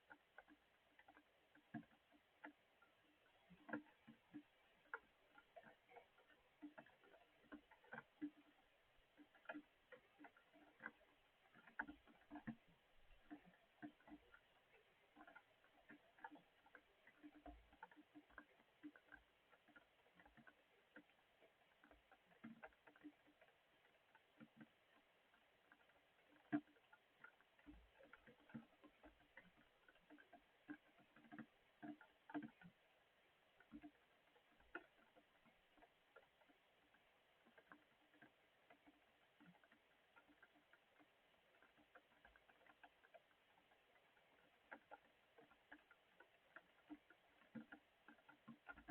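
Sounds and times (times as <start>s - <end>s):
raindrops pattering: 0.0s - 48.9s.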